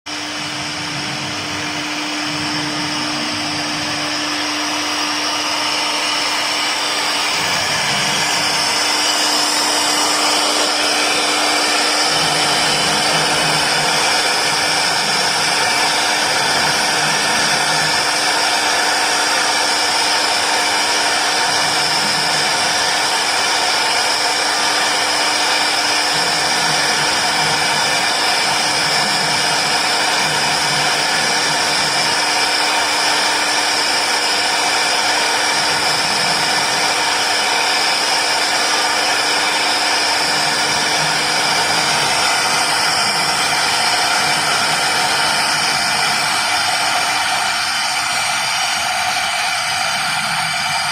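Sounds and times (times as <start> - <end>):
router spindle motor whine: 0.0 - 50.9.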